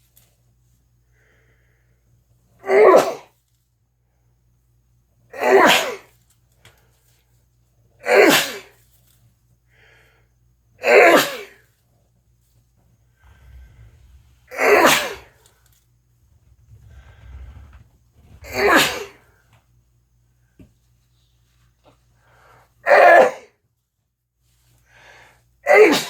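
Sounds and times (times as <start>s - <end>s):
person sneezing: 2.6s - 3.3s, 5.4s - 6.1s, 8.0s - 8.8s, 10.8s - 11.6s, 14.5s - 15.4s, 18.4s - 19.2s, 22.8s - 23.5s, 25.6s - 26.0s.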